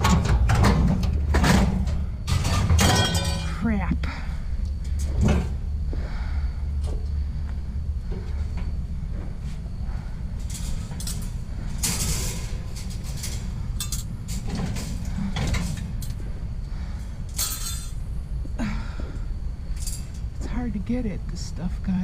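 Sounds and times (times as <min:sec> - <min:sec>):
steady low rumble: 0:00.0 - 0:22.0
hard objects clinking and clattering: 0:02.3 - 0:03.6.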